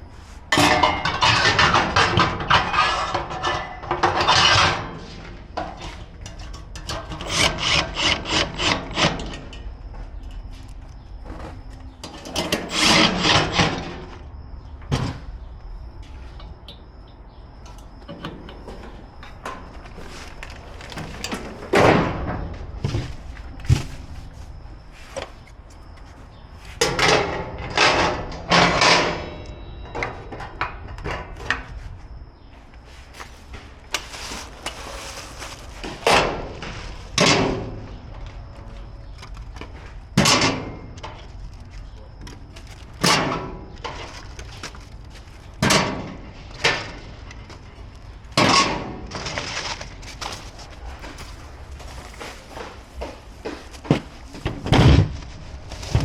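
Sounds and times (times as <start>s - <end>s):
grill parts knocking and clunking: 0.5s - 9.7s.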